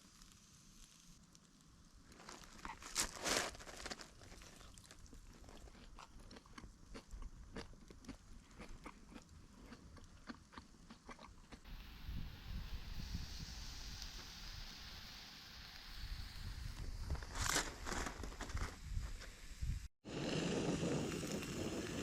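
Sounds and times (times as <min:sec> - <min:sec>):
wood fire crackling: 0:00.0 - 0:06.3, 0:11.7 - 0:22.0
wind noise on microphone: 0:11.7 - 0:15.2, 0:15.8 - 0:22.0.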